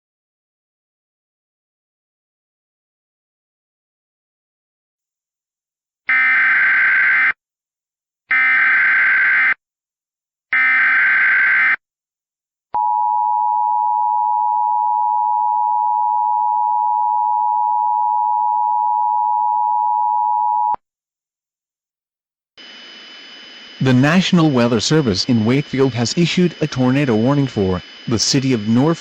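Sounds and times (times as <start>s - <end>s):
data bursts: 22.6s - 29.0s.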